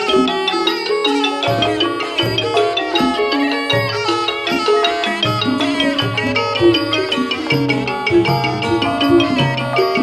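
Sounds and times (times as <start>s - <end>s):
instrumental music with drums: 0.0s - 10.0s.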